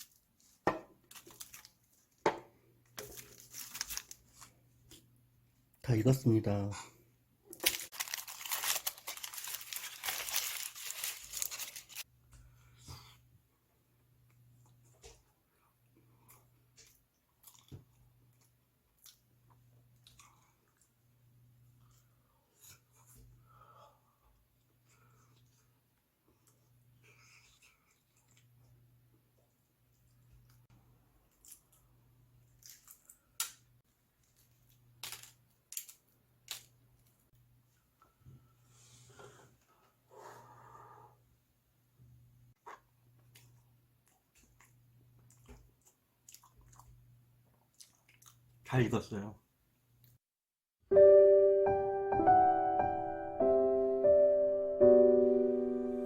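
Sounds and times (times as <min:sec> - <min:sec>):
aluminium foil crinkling: 0:00.0 - 0:02.2, 0:03.0 - 0:04.6, 0:07.5 - 0:12.1, 0:34.2 - 0:37.2.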